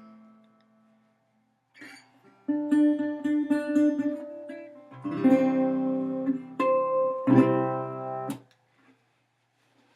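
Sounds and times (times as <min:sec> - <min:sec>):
resonator guitar strumming chords: 0:02.5 - 0:08.4.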